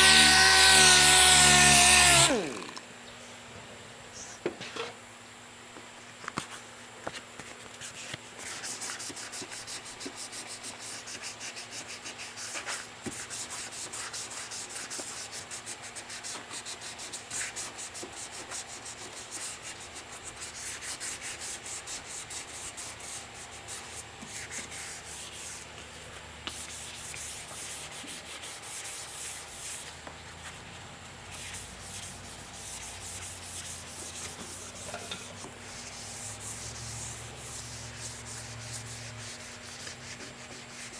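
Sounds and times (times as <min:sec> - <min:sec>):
sandpaper scratching car panel: 0:26.5 - 0:29.9, 0:31.3 - 0:40.9.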